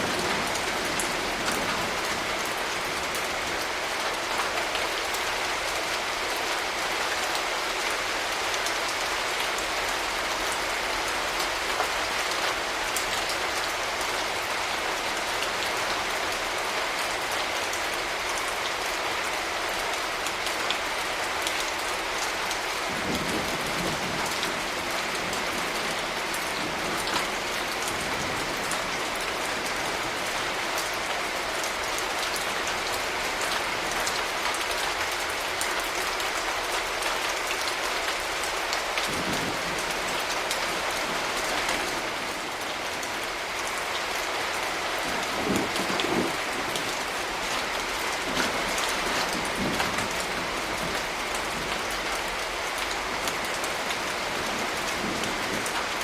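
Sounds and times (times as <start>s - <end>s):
rain pattering: 0.0s - 56.0s
low thunder rumbles: 44.9s - 52.2s, 53.1s - 56.0s.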